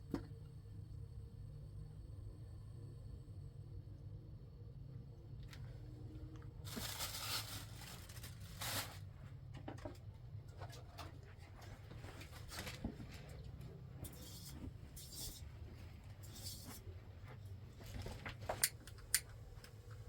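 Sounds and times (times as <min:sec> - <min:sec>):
steady low hum: 0:00.0 - 0:20.0
rustling handling noise: 0:06.6 - 0:09.3.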